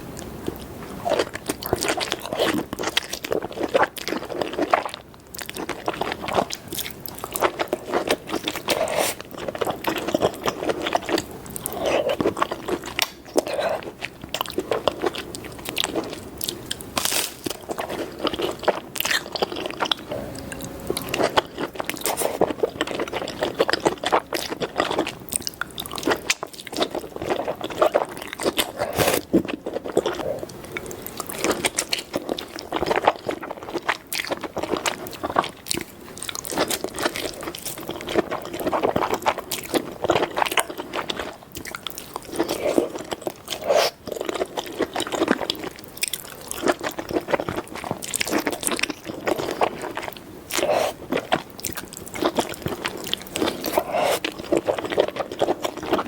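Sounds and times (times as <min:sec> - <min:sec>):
close chewing and crunching: 0:00.0 - 0:56.0
lip smacking: 0:50.5 - 0:54.4.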